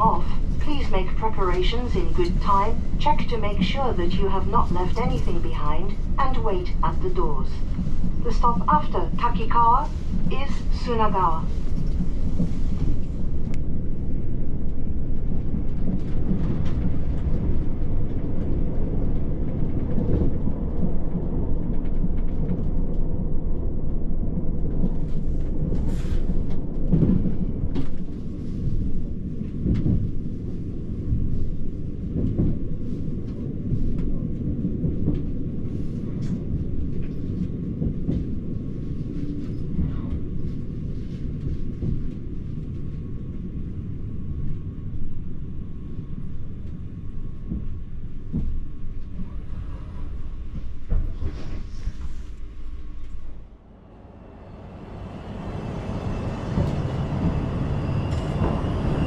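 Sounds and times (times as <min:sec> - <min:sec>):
train wheels rumbling on rail: 0:00.0 - 0:59.0.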